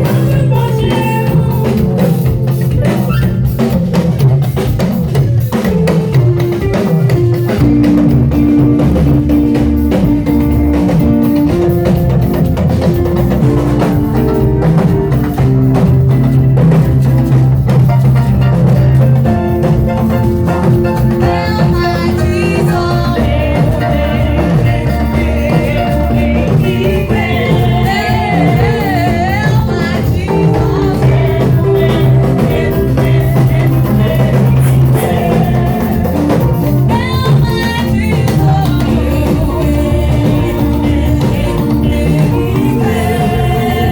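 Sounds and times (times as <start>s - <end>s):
voices singing: 0.0s - 3.7s, 21.2s - 43.9s
live gospel band playing: 0.0s - 43.9s.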